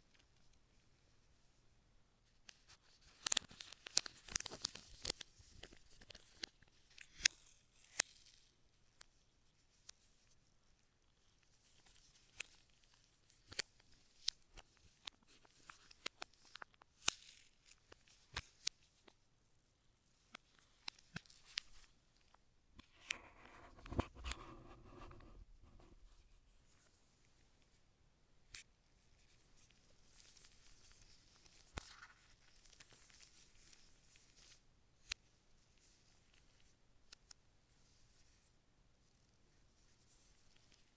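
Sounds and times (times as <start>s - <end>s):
sharp clicks and snaps: 2.5s - 9.2s
packaging crinkling and rustling: 3.0s - 6.6s.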